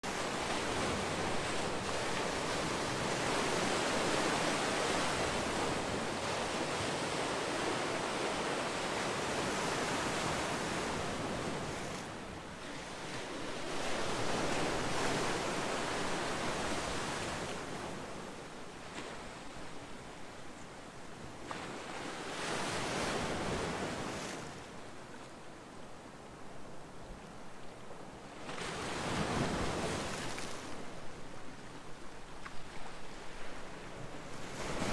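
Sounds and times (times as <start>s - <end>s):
ocean waves breaking on shore: 0.0s - 20.4s, 21.2s - 25.4s, 28.2s - 34.9s.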